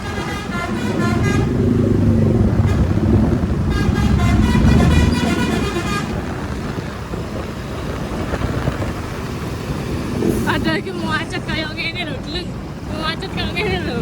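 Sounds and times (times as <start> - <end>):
musical air horn: 0.0 - 1.9, 2.6 - 6.3
bus engine rumble: 0.0 - 14.0
road noise: 0.0 - 14.0.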